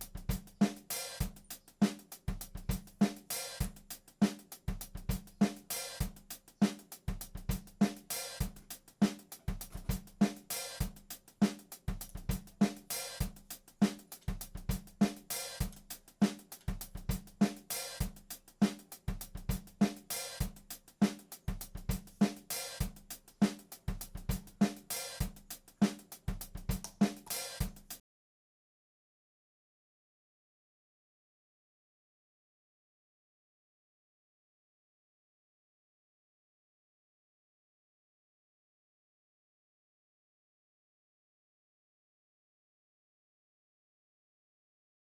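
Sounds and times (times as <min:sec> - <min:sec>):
drum-kit beat: 0:00.0 - 0:28.0.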